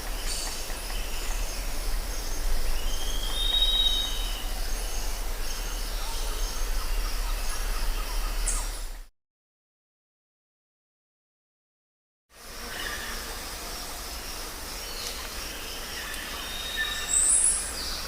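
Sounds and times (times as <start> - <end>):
high insect calls: 0.0 - 9.0, 12.4 - 18.0
steady background hiss: 0.0 - 9.0, 12.4 - 18.0
bird whistling: 2.8 - 4.4.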